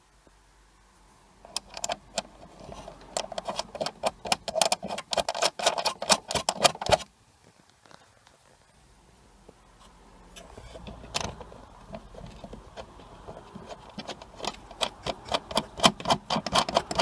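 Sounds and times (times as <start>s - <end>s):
metal nuts clicking and knocking: 1.5s - 7.1s, 10.4s - 17.0s.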